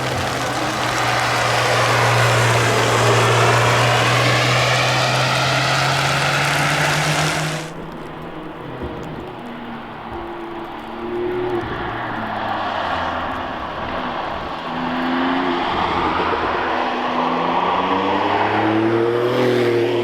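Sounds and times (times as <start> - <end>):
car passing with tyre hiss: 0.0 - 7.8, 11.0 - 20.0.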